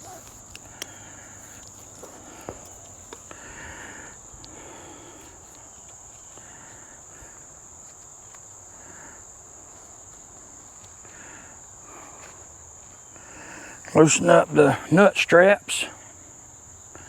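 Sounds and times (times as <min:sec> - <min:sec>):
rustling from handling gear: 0:00.0 - 0:08.5
crickets chirring: 0:00.0 - 0:17.0.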